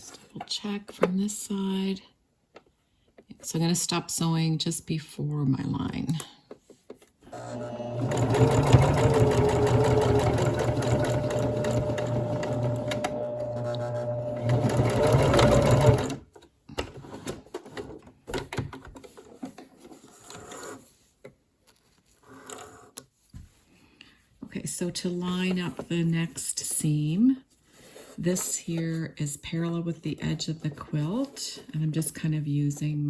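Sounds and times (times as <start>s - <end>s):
sewing machine stitching: 7.3s - 16.2s.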